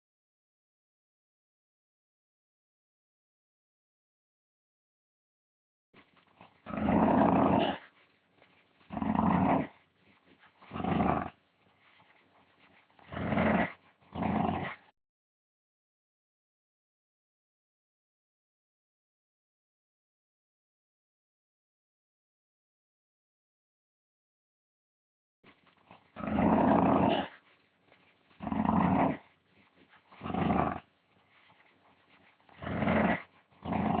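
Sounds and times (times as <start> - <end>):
dog growling: 6.4 - 8.0, 8.8 - 11.4, 12.6 - 14.9, 25.8 - 27.5, 28.3 - 34.0.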